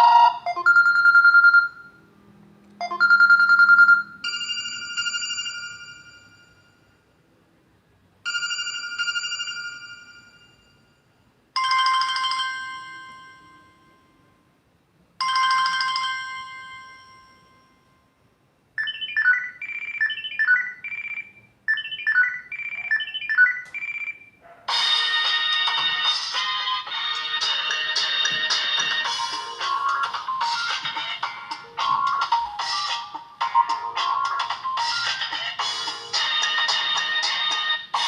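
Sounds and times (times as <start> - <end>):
electronic notes melody: 24.7 - 37.7.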